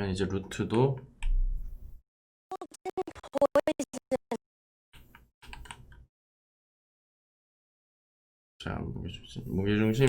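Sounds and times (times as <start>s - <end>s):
stuttering chopped voice fragments: 2.5s - 4.4s.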